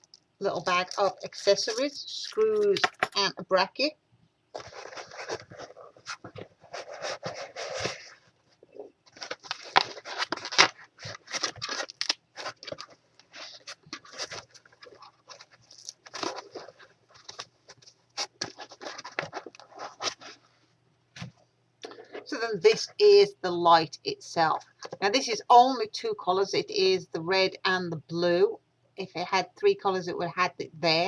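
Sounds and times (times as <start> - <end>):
packaging rustling and crinkling: 4.5 - 20.4.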